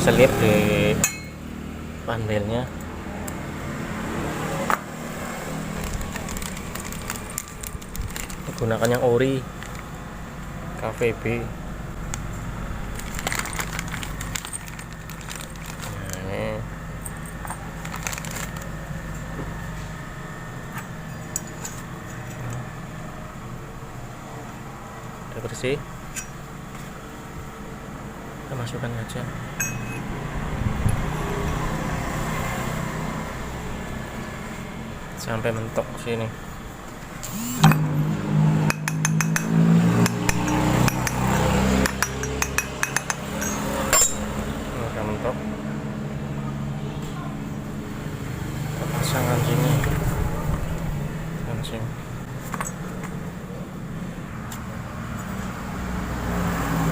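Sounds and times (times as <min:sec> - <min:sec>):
metallic taps and clinks: 0:01.0 - 0:01.4, 0:29.6 - 0:30.0, 0:38.7 - 0:44.3, 0:52.5 - 0:53.2
small metal parts clicking: 0:05.8 - 0:09.0, 0:12.9 - 0:16.2, 0:38.7 - 0:44.3.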